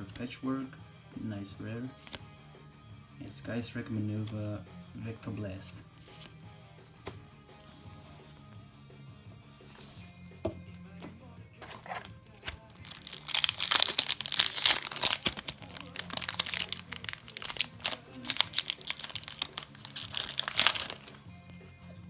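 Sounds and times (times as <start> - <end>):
foil wrapper crinkling and tearing: 11.7 - 21.2.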